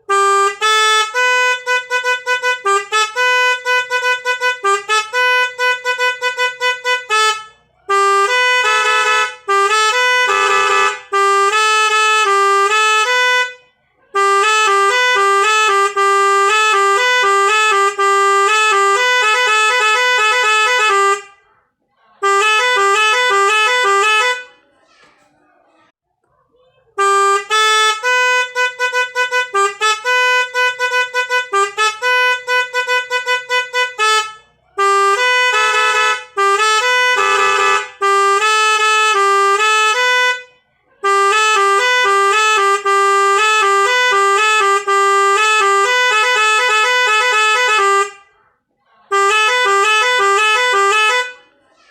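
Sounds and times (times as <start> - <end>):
multi-tone musical vehicle horn: 0.0 - 24.7, 26.9 - 51.9.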